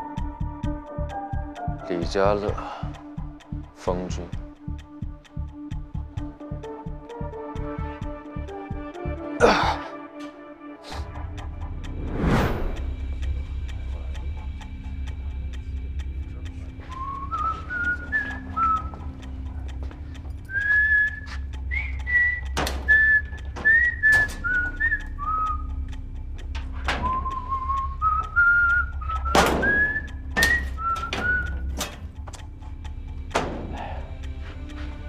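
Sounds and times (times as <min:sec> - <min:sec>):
person whistling a tune: 0:16.9 - 0:19.1, 0:20.4 - 0:25.7, 0:27.0 - 0:31.8.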